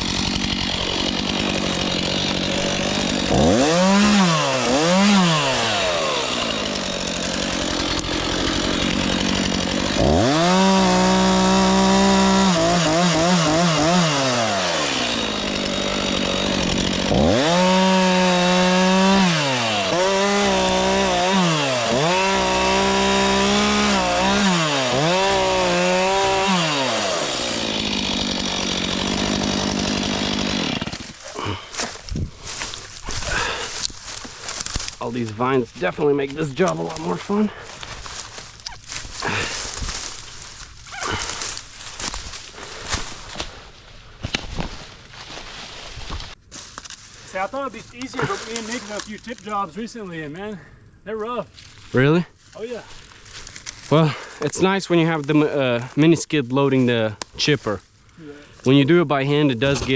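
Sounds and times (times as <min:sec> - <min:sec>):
chainsaw revving and cutting: 0:00.0 - 0:35.0, 0:36.7 - 0:43.6, 0:47.9 - 0:49.6.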